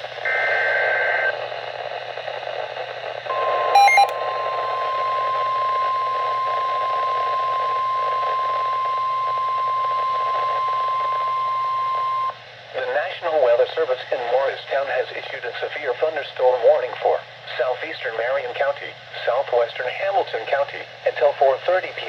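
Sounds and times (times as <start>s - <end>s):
electronic beeps: 3.3s - 4.2s
steady warning alarm tone: 3.3s - 12.3s
radio hiss: 12.8s - 22.0s.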